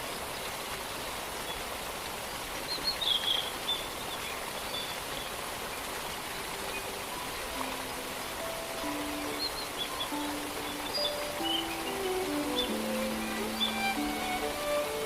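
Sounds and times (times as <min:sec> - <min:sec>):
distant waterfall rushing: 0:00.0 - 0:15.0
high bird chirps: 0:09.1 - 0:14.9.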